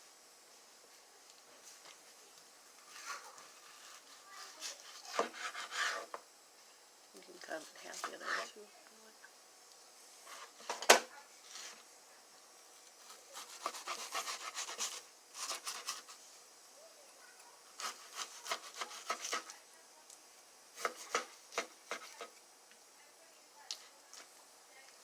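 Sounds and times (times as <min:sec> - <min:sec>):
knife sawing through meat: 0:02.9 - 0:06.1, 0:13.0 - 0:16.2, 0:17.8 - 0:19.5.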